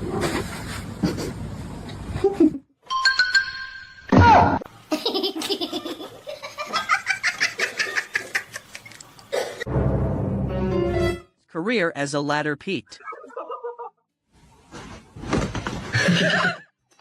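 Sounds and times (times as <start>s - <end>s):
person laughing rhythmically: 4.9s - 8.9s, 13.0s - 14.0s
music: 9.7s - 11.4s.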